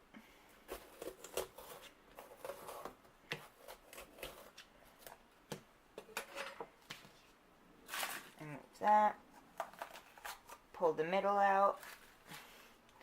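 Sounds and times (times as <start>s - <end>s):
rustling of pepper handled: 7.0s - 8.4s, 11.7s - 12.8s.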